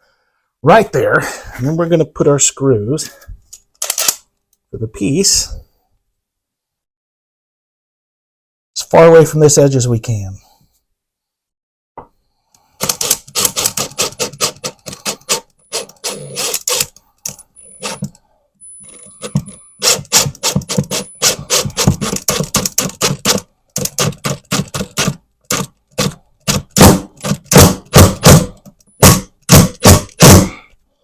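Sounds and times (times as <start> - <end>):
hand tool clicking and scraping: 12.8 - 18.2, 18.8 - 30.4.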